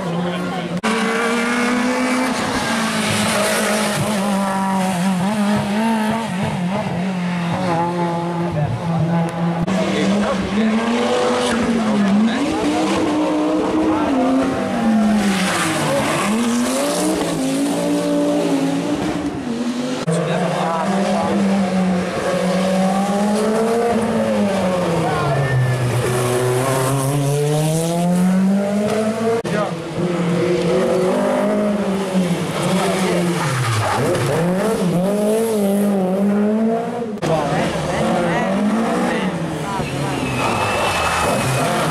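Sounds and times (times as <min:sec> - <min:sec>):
rally car engine revving: 0:00.0 - 0:41.9
tyres skidding: 0:00.0 - 0:41.9.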